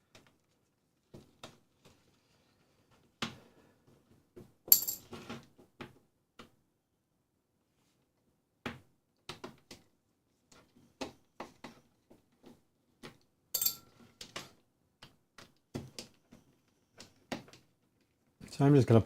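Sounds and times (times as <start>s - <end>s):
metallic clink: 4.7s - 5.0s, 13.6s - 14.0s.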